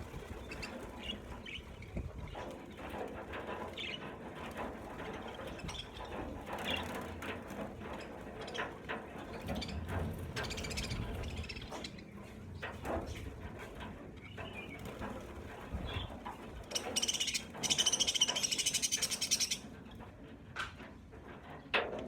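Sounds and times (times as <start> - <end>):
budgerigars chattering: 16.7 - 19.6
rapid close chirping: 16.7 - 19.6.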